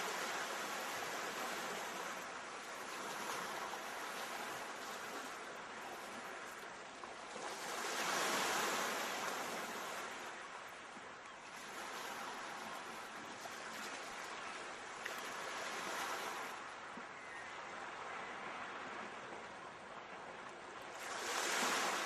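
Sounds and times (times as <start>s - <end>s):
sea waves washing: 20.9s - 22.0s.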